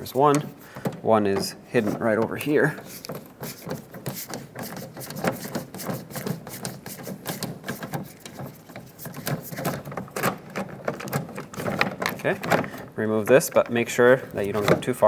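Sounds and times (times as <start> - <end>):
screwdriver clicking and rattling: 2.9 - 13.8.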